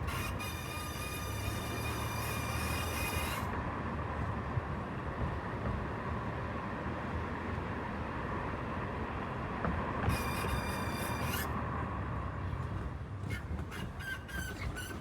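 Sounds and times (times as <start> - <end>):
high-pitched metallic brake squeal: 0.1 - 3.5, 10.1 - 11.5, 13.3 - 15.0
short brake squeaks: 10.1 - 11.5, 13.3 - 15.0.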